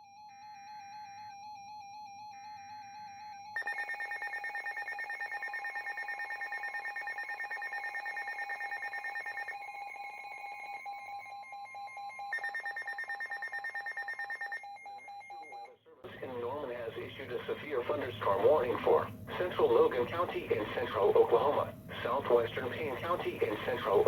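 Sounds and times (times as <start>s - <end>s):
rapidly pulsing electronic beep: 3.6s - 24.0s
warbling alarm tone: 11.2s - 15.7s.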